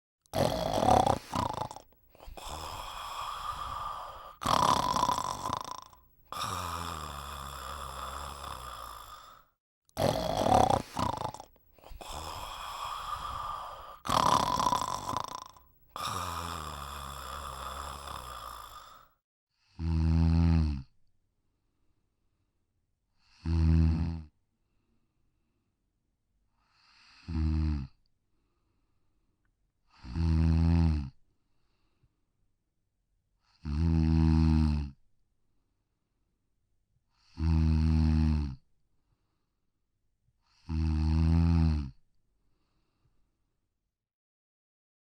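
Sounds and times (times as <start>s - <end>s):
cat snoring: 0.3s - 9.4s, 10.0s - 20.9s, 23.2s - 24.3s, 26.6s - 28.0s, 29.9s - 31.2s, 33.4s - 35.0s, 37.2s - 38.6s, 40.4s - 42.0s.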